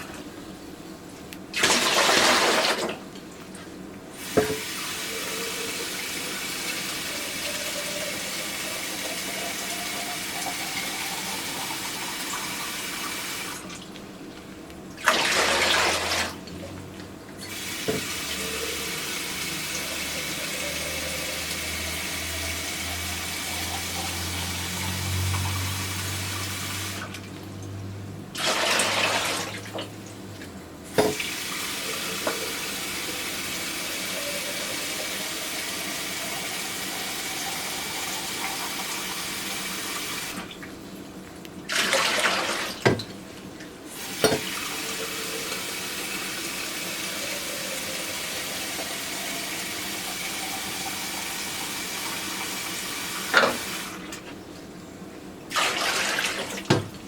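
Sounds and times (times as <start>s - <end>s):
faucet running into a sink: 4.2s - 13.8s, 15.1s - 16.5s, 17.4s - 27.2s, 28.4s - 29.9s, 31.0s - 40.5s, 43.9s - 54.1s.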